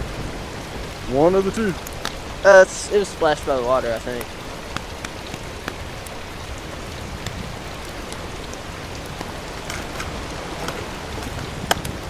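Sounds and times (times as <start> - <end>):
water rushing: 0.0 - 12.0
small clicks: 6.9 - 12.0.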